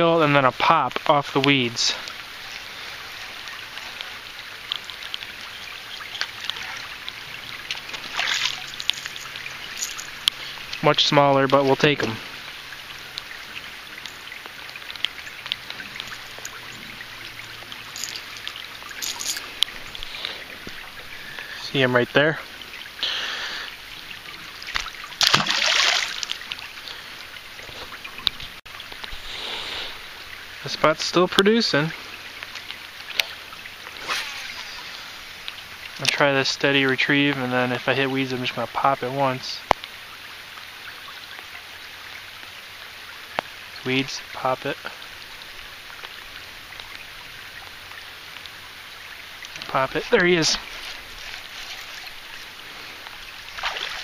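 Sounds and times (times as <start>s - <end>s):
steady rain hiss: 0.0s - 54.0s
light taps of raindrops: 0.2s - 22.9s, 24.0s - 29.2s, 30.2s - 34.0s, 35.4s - 54.0s
water splash: 6.0s - 21.5s, 24.6s - 26.7s, 33.0s - 36.3s, 49.4s - 54.0s
faint hiss: 23.0s - 23.8s, 29.0s - 39.8s.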